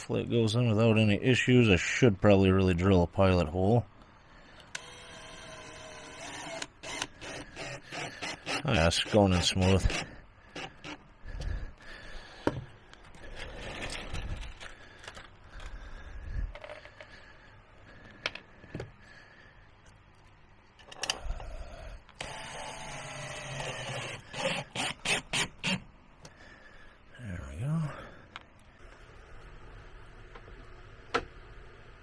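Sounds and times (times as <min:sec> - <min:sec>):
power drill motor running: 0:04.7 - 0:11.1, 0:21.0 - 0:25.9.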